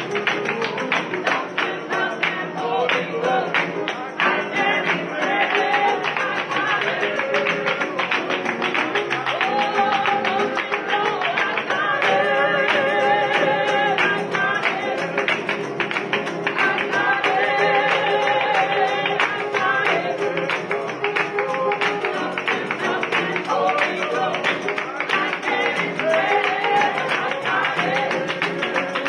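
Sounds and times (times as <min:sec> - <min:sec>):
rapid guitar strumming: 0:00.0 - 0:29.0
voices singing: 0:00.0 - 0:29.0.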